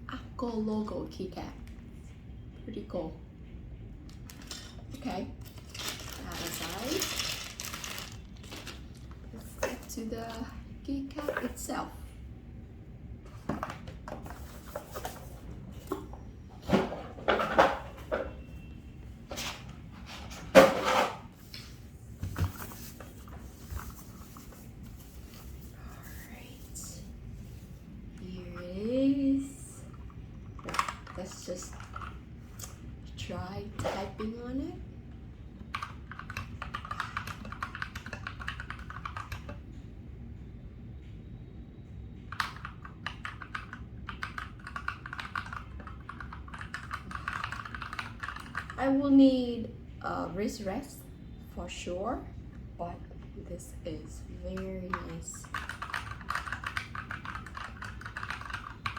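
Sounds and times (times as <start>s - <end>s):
packaging rubbing and sliding: 5.5s - 9.1s
mechanical keyboard typing: 35.7s - 39.6s, 42.3s - 48.8s, 54.6s - 58.9s.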